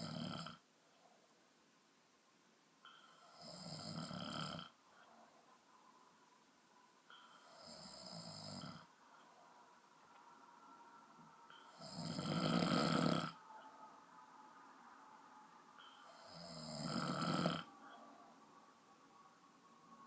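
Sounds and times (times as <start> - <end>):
person snoring: 0.0 - 0.6, 3.1 - 4.8, 7.4 - 8.9, 11.7 - 13.4, 16.1 - 17.7
quiet breathing: 0.0 - 1.5, 2.1 - 20.0.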